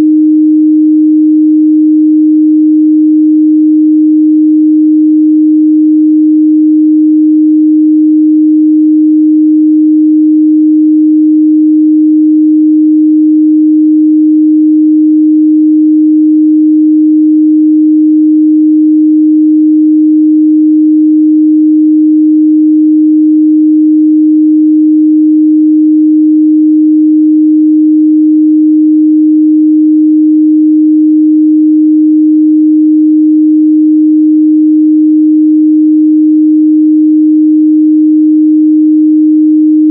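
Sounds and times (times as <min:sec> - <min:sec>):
sine-wave test tone: 0:00.0 - 0:39.9.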